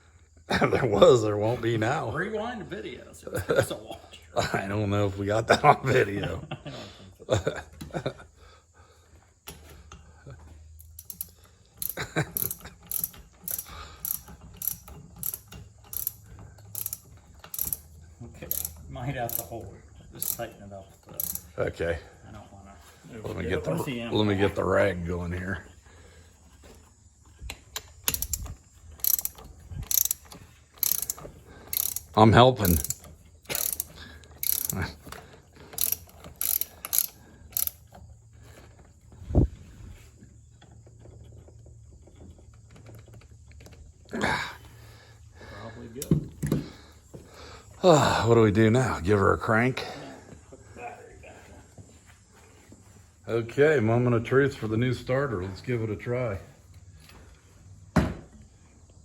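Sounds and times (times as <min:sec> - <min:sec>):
socket ratchet clicking: 0:10.8 - 0:17.9, 0:18.5 - 0:19.5, 0:20.2 - 0:20.4, 0:21.1 - 0:21.5, 0:27.7 - 0:34.8, 0:35.7 - 0:37.9.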